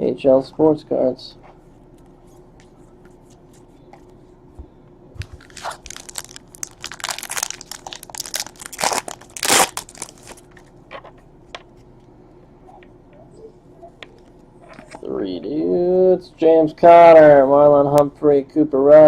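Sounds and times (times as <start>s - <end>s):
wrapper tearing and crinkling: 5.3s - 10.5s.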